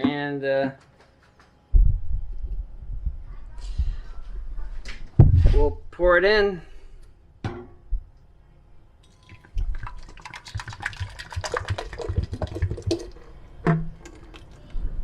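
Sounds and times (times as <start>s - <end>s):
thick puree pouring and glugging: 9.0s - 13.4s, 14.0s - 14.6s.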